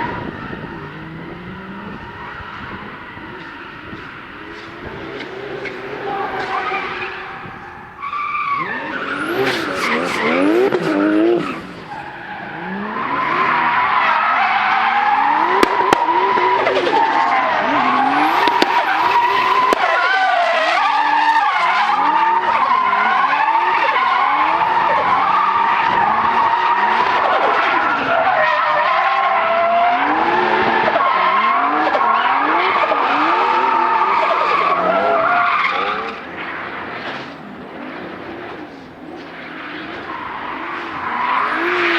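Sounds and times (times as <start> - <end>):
car engine revving: 0.0 - 41.9
tyres squealing: 0.4 - 26.9.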